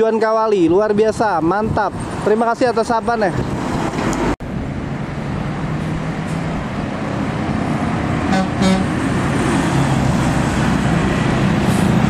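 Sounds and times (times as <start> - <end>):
road traffic passing: 0.0 - 12.0
vehicle horn toots: 8.3 - 9.0.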